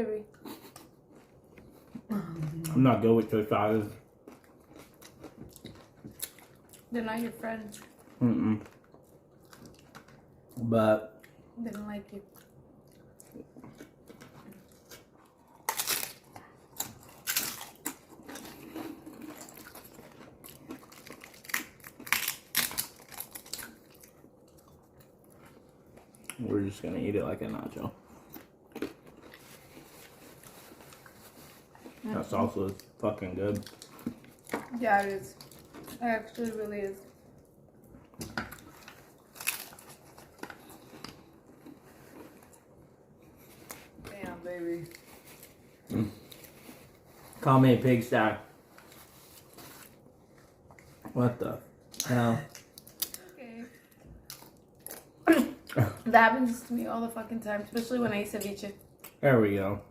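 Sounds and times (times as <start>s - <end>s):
chewing: 0.3s - 3.3s, 4.2s - 6.9s, 7.6s - 10.6s, 11.2s - 26.5s, 27.6s - 44.1s
tostada crunching: 0.4s - 26.5s, 27.9s - 44.1s, 44.8s - 56.0s
crunching crisp tostada: 12.4s - 26.4s, 38.1s - 44.0s, 51.9s - 53.2s.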